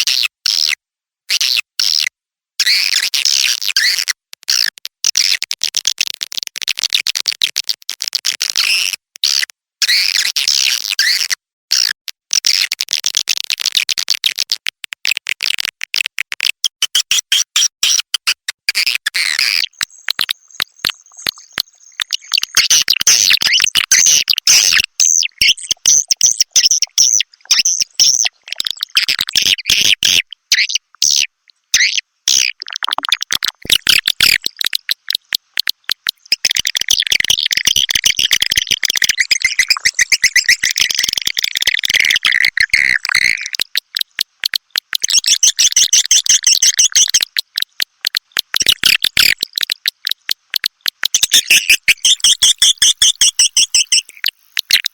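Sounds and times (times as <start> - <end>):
swiftlets chirping and twittering: 19.5 - 43.6, 51.1 - 54.9.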